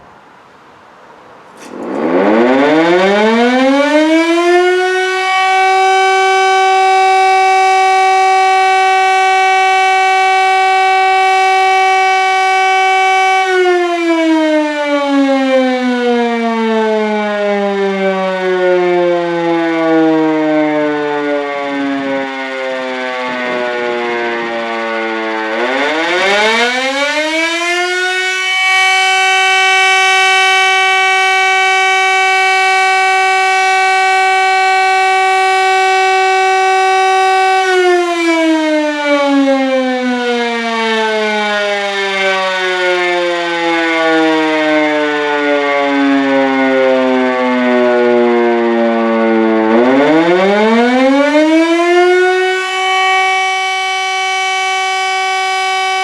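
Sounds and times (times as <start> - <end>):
civil-defence siren winding: 21.1 - 28.4.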